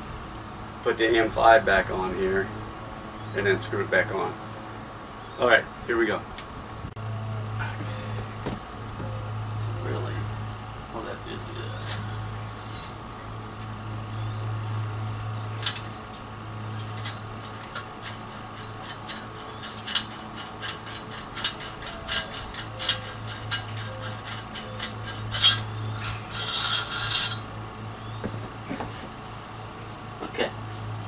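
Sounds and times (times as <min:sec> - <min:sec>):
steady low hum: 0:00.0 - 0:31.0
metal parts clicking and tapping: 0:15.6 - 0:15.9, 0:16.8 - 0:27.4.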